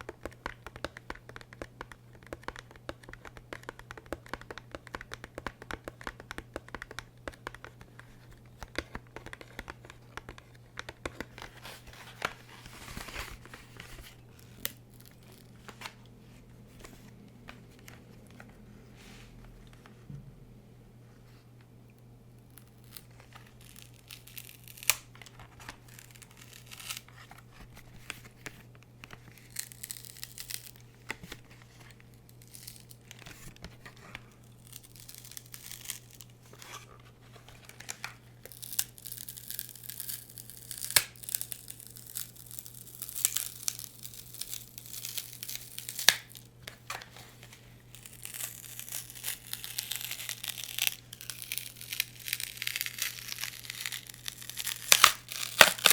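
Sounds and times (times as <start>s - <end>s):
crinkly material crumpling: 22.8s - 55.9s.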